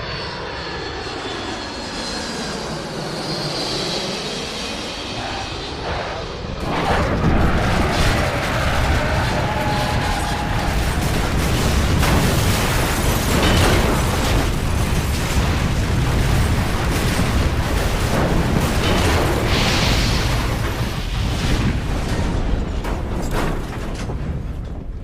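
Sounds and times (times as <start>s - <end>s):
rumbling explosion: 5.2s - 25.0s.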